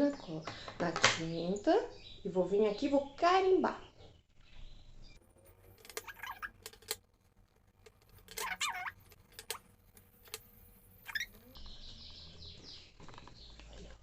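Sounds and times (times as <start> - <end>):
sponge squeaks: 5.9 - 6.8, 8.1 - 10.4, 11.0 - 11.6.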